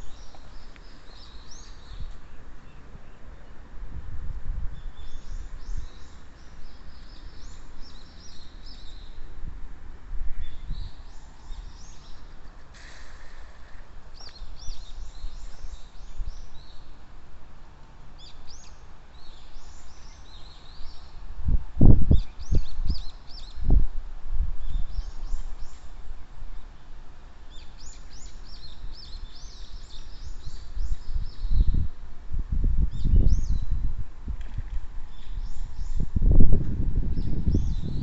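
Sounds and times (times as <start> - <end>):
songbirds singing: 0.0 - 3.8, 4.6 - 9.4, 10.3 - 23.8, 24.6 - 32.0, 32.7 - 38.0.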